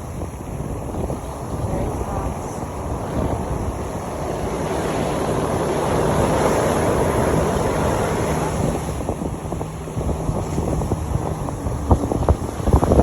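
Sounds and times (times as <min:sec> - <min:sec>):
low steady boat hum: 0:00.0 - 0:13.0
water rushing against boat: 0:00.0 - 0:13.0
wind buffeting microphone: 0:00.0 - 0:13.0.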